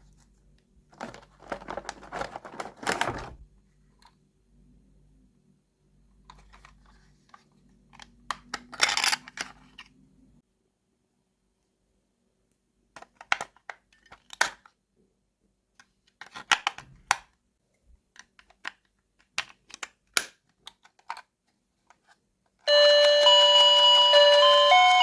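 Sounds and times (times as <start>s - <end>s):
plastic toy pieces clicking: 8.4s - 9.5s
electronic beeping tune: 22.7s - 25.0s.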